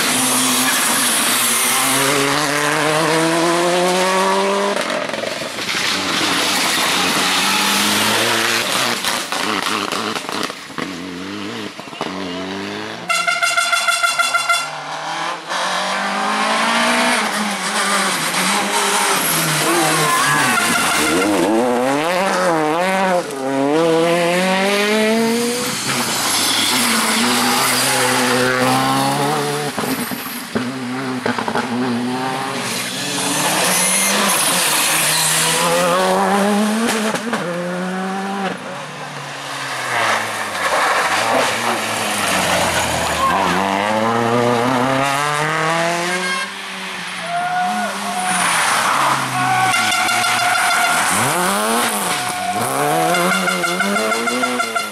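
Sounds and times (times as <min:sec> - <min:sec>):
rally car engines revving: 0:00.0 - 0:13.2, 0:14.4 - 0:54.9
tyres squealing: 0:18.8 - 0:22.2, 0:47.2 - 0:54.9.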